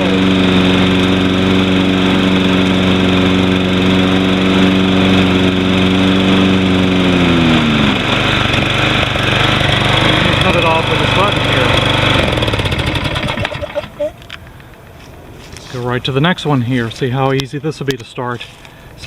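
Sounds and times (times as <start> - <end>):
lawn mower engine running: 0.0 - 14.5.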